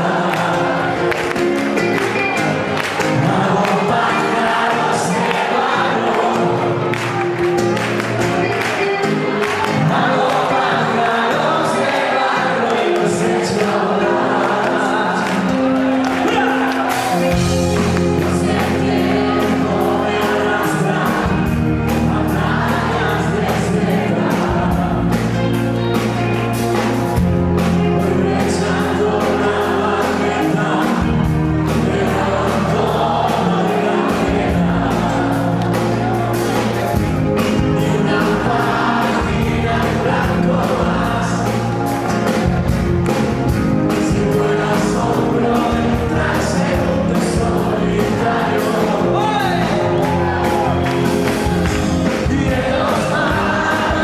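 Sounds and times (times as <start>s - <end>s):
person singing: 0.0s - 7.6s, 8.2s - 26.1s, 27.6s - 42.5s, 43.8s - 54.0s
live band playing: 0.0s - 54.0s
long held bass notes: 14.9s - 54.0s.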